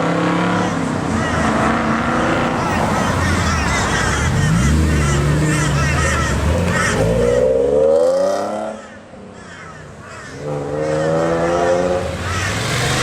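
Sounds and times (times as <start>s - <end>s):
car engine revving: 1.4s - 8.7s.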